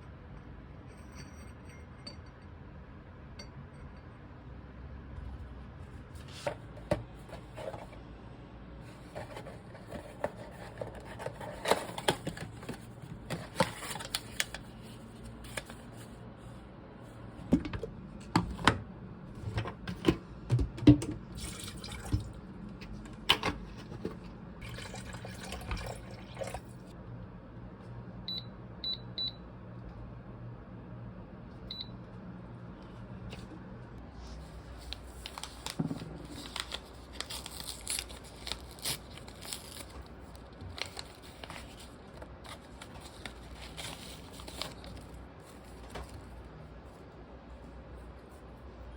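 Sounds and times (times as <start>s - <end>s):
water running in sink: 24.6s - 26.8s.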